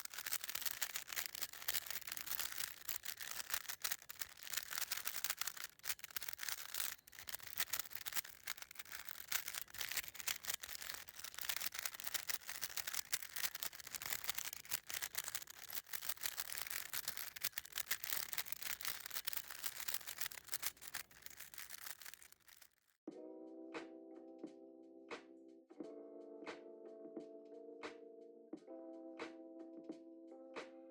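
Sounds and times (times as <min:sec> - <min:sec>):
puzzle cube clicking and rattling: 0:00.0 - 0:22.8.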